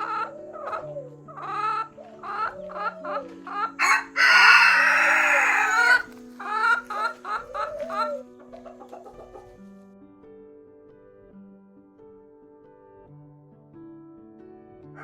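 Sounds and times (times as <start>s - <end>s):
chicken clucking: 0.0s - 9.6s.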